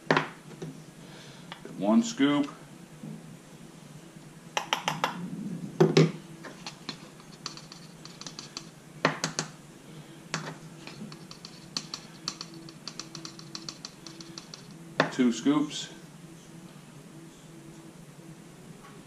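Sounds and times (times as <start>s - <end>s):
scoop scraping ground coffee: 6.5s - 8.7s, 10.4s - 14.8s
scoop tapping metal basket: 6.5s - 9.5s, 10.4s - 15.2s.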